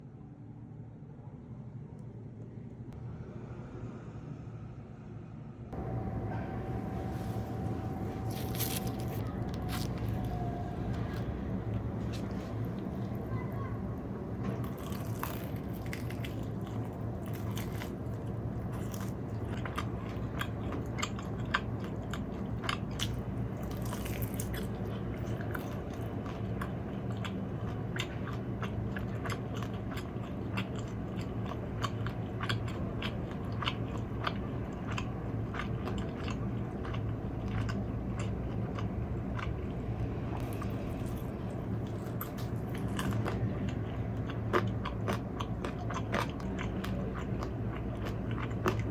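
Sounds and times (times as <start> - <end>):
low background hum: 0.0 - 48.9
crunchy food chewing: 7.0 - 13.7, 14.4 - 39.8, 40.4 - 48.9.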